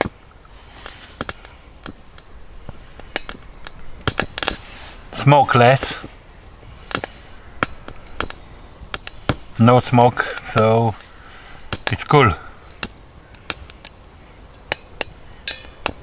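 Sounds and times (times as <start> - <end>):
sticks crackling and popping in stove: 0.0 - 16.0.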